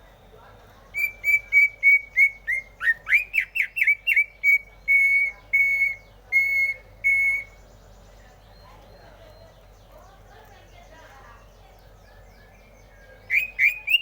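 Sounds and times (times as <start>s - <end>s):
bird whistling song: 0.9s - 7.8s, 12.0s - 14.0s.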